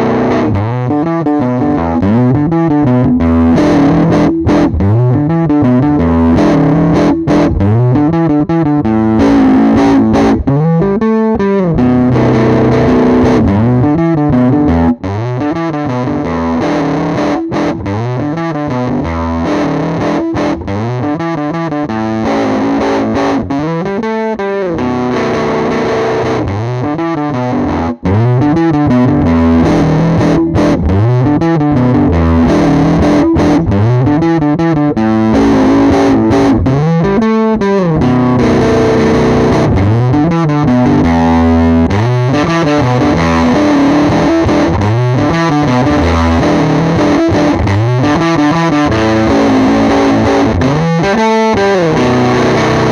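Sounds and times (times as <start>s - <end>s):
distorted electric guitar riff: 0.0s - 52.9s.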